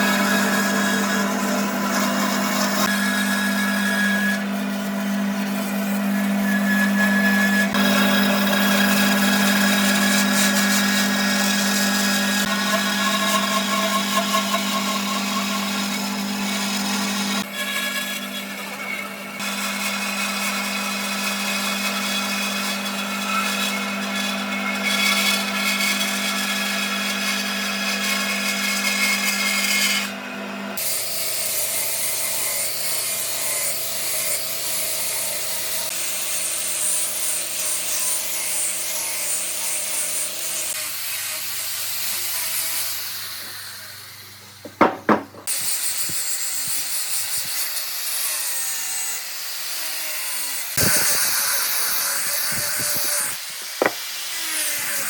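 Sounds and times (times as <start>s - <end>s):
power tool grinding wood: 0.0s - 55.0s
sharp knocks: 44.6s - 45.5s, 53.8s - 54.0s.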